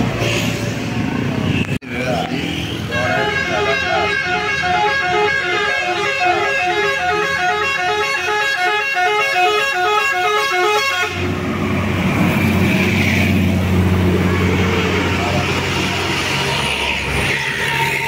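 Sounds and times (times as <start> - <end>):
bus air horn playing a tune: 2.9 - 11.3.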